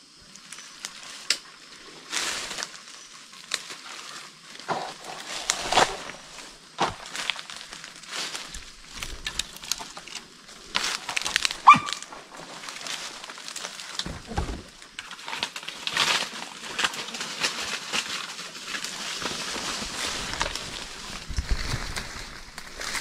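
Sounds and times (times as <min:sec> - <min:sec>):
dry leaves crackling underfoot: 0:00.3 - 0:23.0
high-pitched animal yelp: 0:11.6 - 0:12.1.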